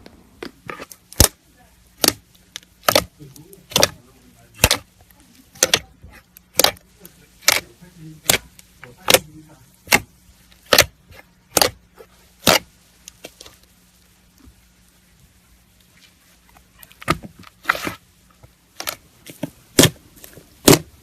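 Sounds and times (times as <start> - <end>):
slime popping: 2.0 - 4.9, 5.5 - 13.7.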